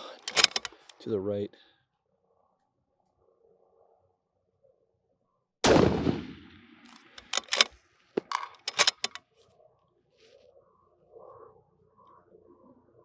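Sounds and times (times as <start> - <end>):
rifle bolt metallic clicks: 0.0 - 1.0, 6.9 - 9.2
rifle shot: 5.6 - 9.2.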